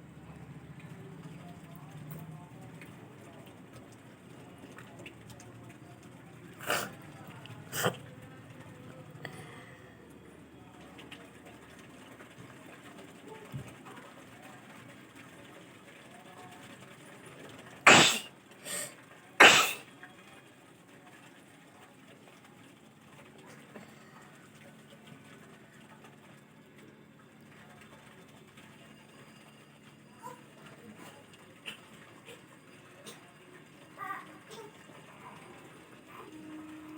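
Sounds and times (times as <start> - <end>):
woman sneezing: 6.6 - 7.0, 17.9 - 19.8.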